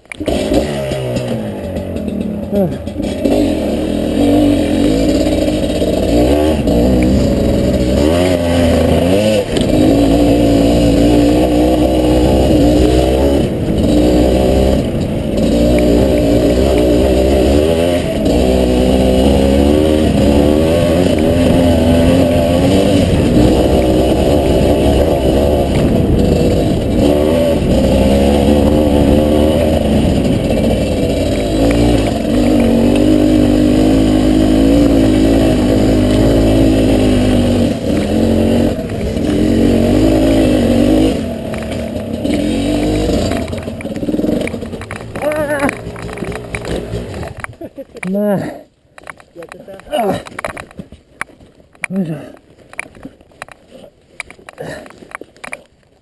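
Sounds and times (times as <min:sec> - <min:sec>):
two-stroke dirt bike engine revving: 0:00.0 - 0:50.7, 0:51.8 - 0:53.1.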